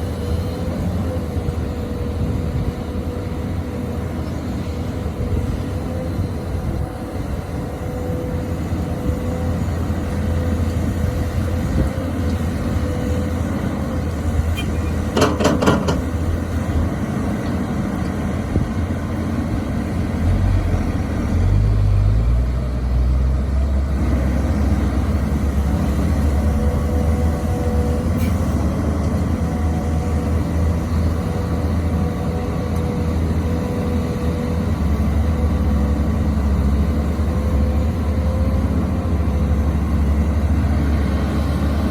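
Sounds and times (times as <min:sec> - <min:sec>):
excavator diesel engine running: 0:00.0 - 0:41.9
metallic clanks: 0:14.6 - 0:16.2.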